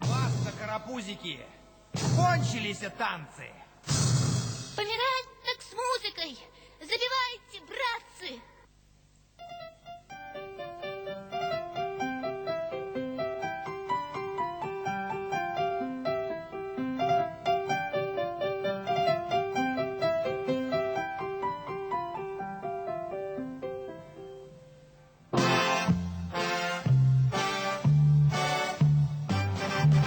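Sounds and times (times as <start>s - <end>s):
piano music: 9.4s - 30.0s.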